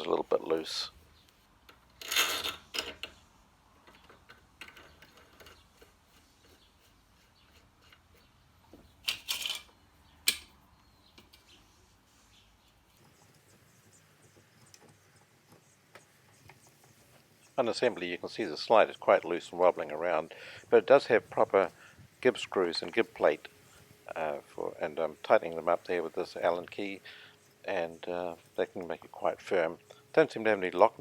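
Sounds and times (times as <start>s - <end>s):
metal parts clicking and clinking: 1.7s - 3.2s, 3.8s - 6.0s, 9.0s - 10.6s.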